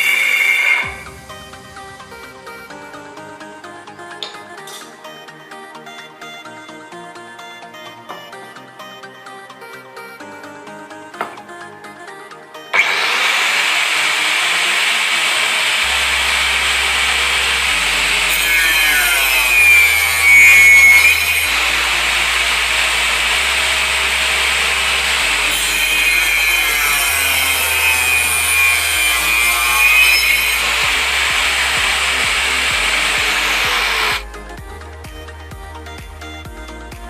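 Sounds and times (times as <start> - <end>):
angle grinder cutting: 0.0 - 1.1, 12.8 - 34.2.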